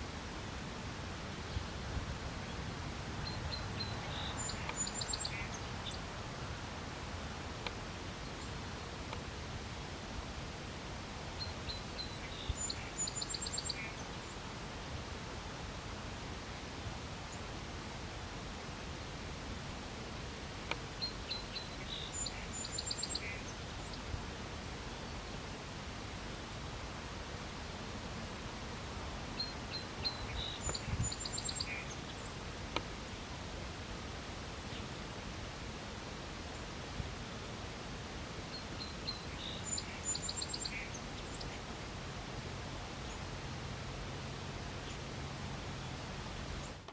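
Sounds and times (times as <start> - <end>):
outdoor background hiss: 0.0 - 46.9
small bird chirping: 3.2 - 6.0, 29.4 - 32.4
songbird chirping: 3.2 - 6.5, 11.4 - 14.5, 20.6 - 24.2, 28.8 - 33.5, 38.2 - 41.9.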